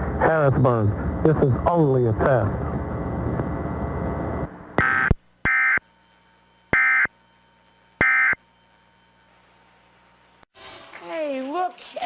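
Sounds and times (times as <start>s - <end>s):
screechy digital data tones: 6.7s - 7.2s, 8.0s - 8.4s.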